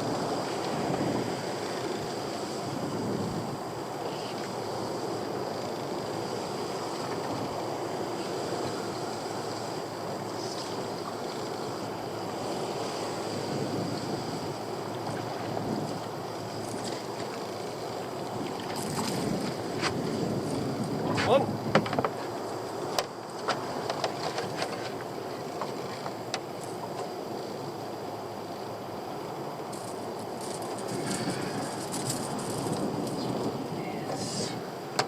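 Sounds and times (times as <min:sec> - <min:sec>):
wind rushing across microphone: 0:00.0 - 0:05.6, 0:12.0 - 0:17.1, 0:17.8 - 0:22.2, 0:30.2 - 0:35.0
water lapping against boat hull: 0:06.1 - 0:27.5.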